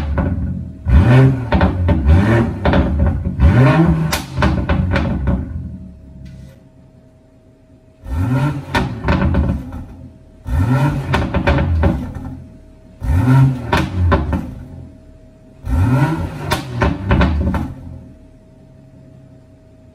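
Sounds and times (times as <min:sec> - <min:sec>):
exhaust pops and crackles: 0:00.0 - 0:05.7, 0:08.7 - 0:10.0, 0:10.7 - 0:12.4, 0:13.4 - 0:14.8, 0:16.3 - 0:17.9
car engine revving: 0:00.0 - 0:06.4, 0:07.9 - 0:18.3.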